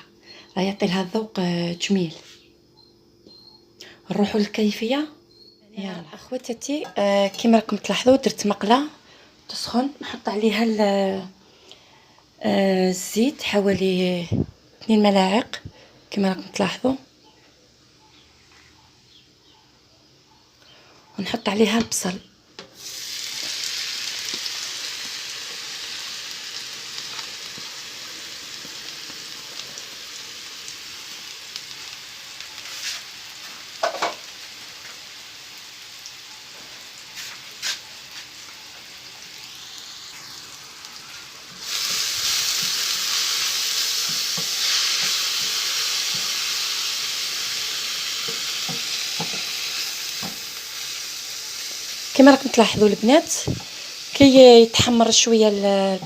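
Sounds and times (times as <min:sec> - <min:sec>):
onions sizzling in oil: 0:22.6 - 0:56.0.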